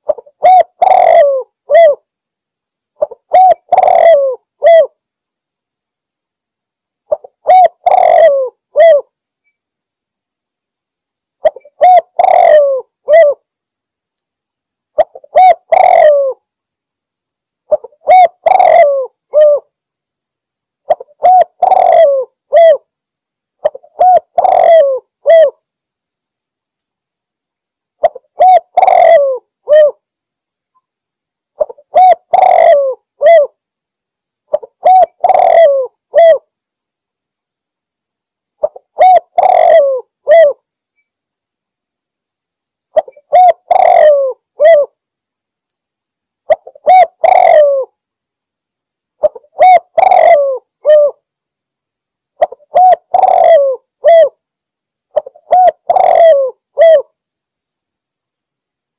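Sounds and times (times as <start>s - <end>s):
dove cooing: 0.0s - 2.0s, 3.0s - 5.0s, 7.1s - 9.1s, 11.4s - 13.4s, 15.0s - 16.4s, 17.7s - 19.7s, 20.9s - 22.9s, 23.6s - 25.6s, 28.0s - 30.0s, 31.6s - 33.6s, 34.5s - 36.5s, 38.6s - 40.6s, 43.0s - 45.0s, 46.5s - 48.0s, 49.2s - 51.2s, 52.4s - 54.4s, 55.2s - 57.1s.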